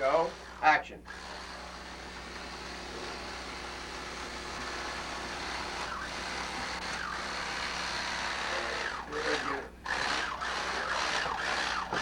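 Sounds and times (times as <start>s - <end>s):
chainsaw engine running: 5.4s - 12.0s.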